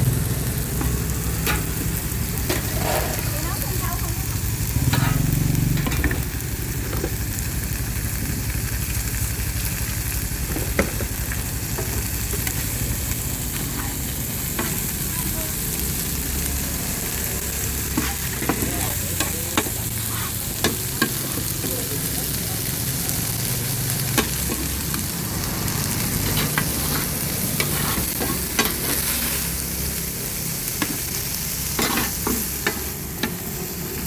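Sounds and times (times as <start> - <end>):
food sizzling in a pan: 0.0 - 34.0.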